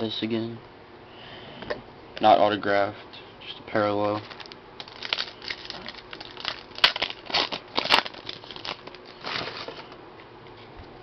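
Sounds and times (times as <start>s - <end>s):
foil wrapper crinkling and tearing: 4.1s - 10.0s.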